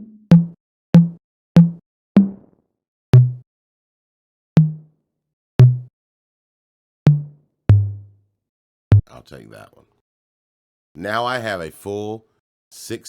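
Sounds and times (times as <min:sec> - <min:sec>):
electronic drum hits: 0:00.0 - 0:02.4, 0:03.2 - 0:03.4, 0:04.6 - 0:04.8, 0:05.6 - 0:05.9, 0:07.1 - 0:08.0.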